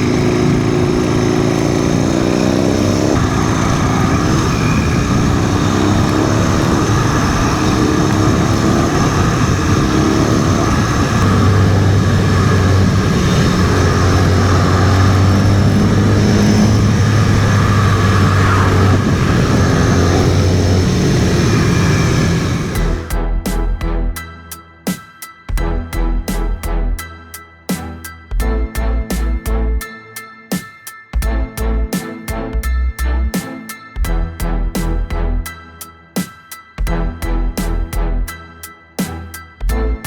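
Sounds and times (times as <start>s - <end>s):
motorcycle engine running: 0.0s - 23.2s.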